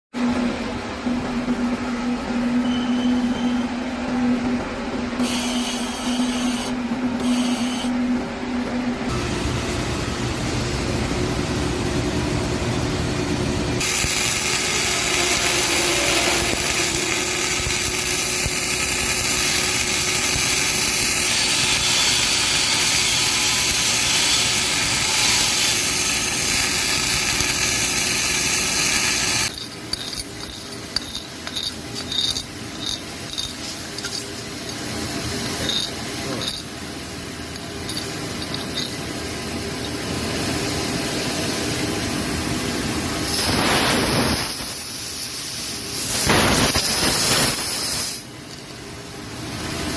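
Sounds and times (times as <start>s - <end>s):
welding crackling hiss: 13.8s - 30.1s, 43.2s - 48.3s.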